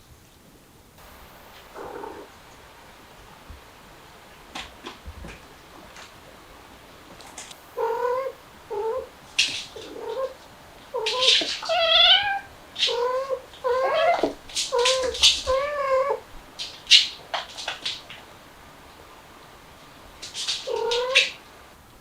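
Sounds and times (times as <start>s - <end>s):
sharp hissy bursts: 1.0s - 21.8s
cat meowing: 1.4s - 2.5s, 7.8s - 16.3s, 20.6s - 21.4s.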